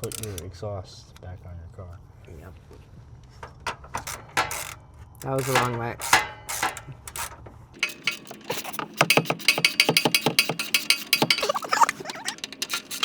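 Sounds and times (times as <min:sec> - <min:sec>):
ratchet wrench clicking: 0:00.0 - 0:00.4, 0:03.8 - 0:13.0.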